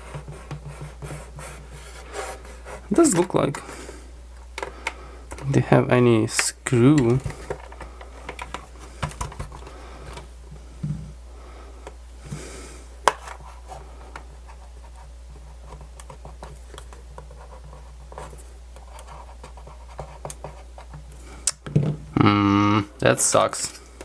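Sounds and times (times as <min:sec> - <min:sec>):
plastic case clicking and scratching: 0:07.0 - 0:10.3.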